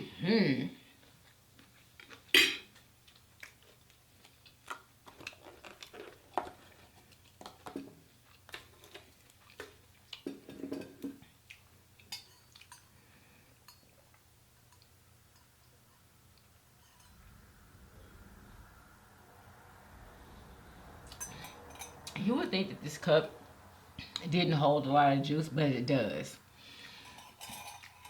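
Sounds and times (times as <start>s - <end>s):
person chewing food: 0.8s - 16.6s.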